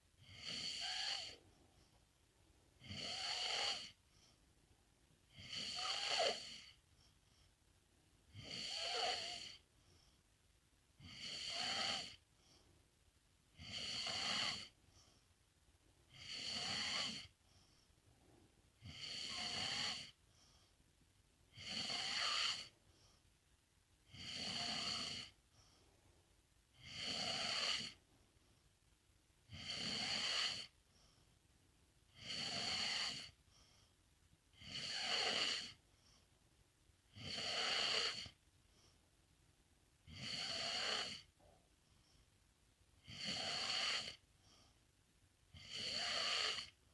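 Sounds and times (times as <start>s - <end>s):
pet snoring: 0.2s - 1.5s, 2.8s - 4.0s, 5.3s - 6.8s, 8.3s - 9.7s, 11.0s - 12.2s, 13.5s - 14.8s, 16.1s - 17.4s, 18.8s - 20.7s, 21.5s - 22.8s, 24.0s - 25.4s, 26.7s - 28.0s, 29.5s - 31.1s, 32.1s - 33.8s, 34.5s - 36.2s, 37.1s - 38.4s, 40.0s - 41.6s, 43.0s - 44.7s, 45.5s - 46.8s.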